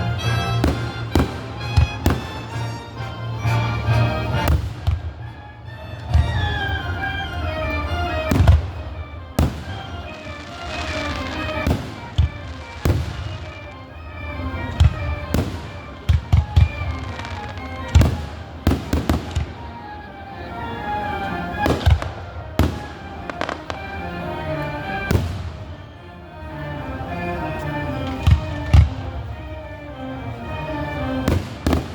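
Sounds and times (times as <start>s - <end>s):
melodic music: 0.0s - 31.9s
fireworks booming: 0.6s - 2.7s, 4.3s - 5.4s, 7.8s - 19.7s, 21.6s - 24.0s, 25.1s - 25.8s, 31.2s - 31.9s.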